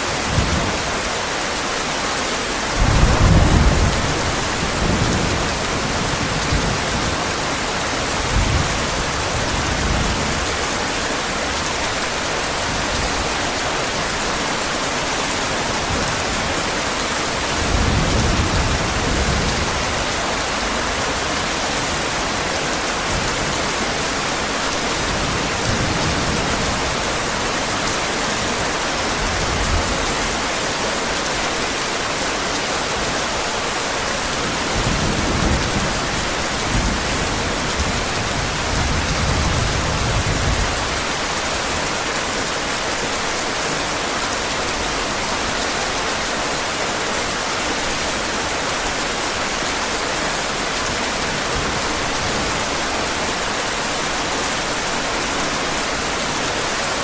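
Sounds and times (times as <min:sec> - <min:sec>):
heavy rain: 0:00.0 - 0:57.0
low thunder rumbles: 0:02.7 - 0:07.2.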